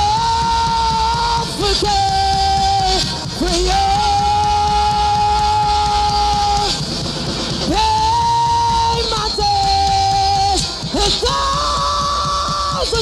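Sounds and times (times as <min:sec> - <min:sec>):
rock band playing: 0:00.0 - 0:13.0.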